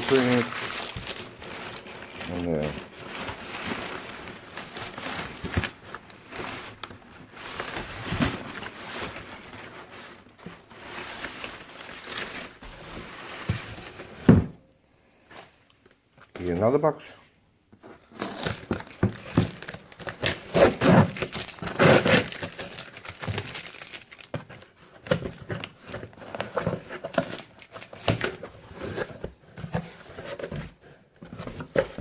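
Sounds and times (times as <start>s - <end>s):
paper tearing: 0.0s - 1.2s, 20.2s - 23.0s
packaging paper crinkling: 0.0s - 14.0s, 18.0s - 32.0s.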